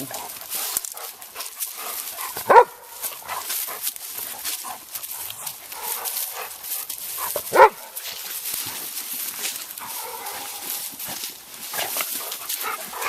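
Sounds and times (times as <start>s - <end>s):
dog barking loudly: 1.8s - 3.8s, 5.4s - 6.6s, 7.2s - 8.1s, 9.8s - 10.8s, 11.8s - 13.0s.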